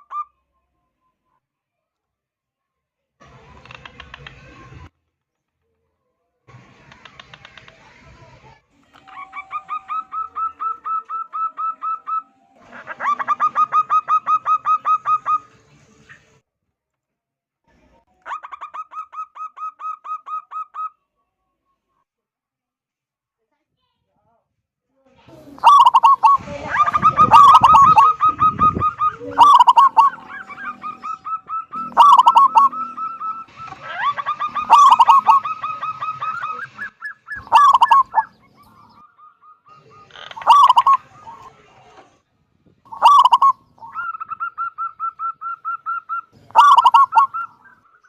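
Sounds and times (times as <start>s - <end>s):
dove cooing rapidly: 9.0s - 15.5s, 25.5s - 39.0s, 39.8s - 41.6s, 42.9s - 47.8s.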